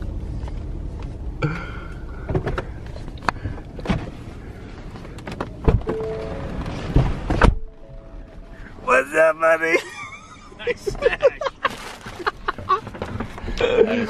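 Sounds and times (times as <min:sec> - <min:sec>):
vehicle engine rumble: 0:00.0 - 0:14.0
truck doors and gear clunking: 0:01.5 - 0:07.9, 0:11.9 - 0:14.0.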